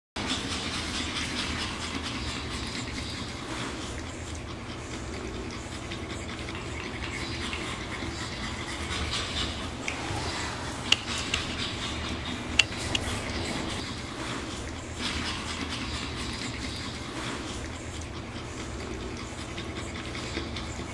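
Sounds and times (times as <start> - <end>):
steady low hum: 0.2 - 20.9.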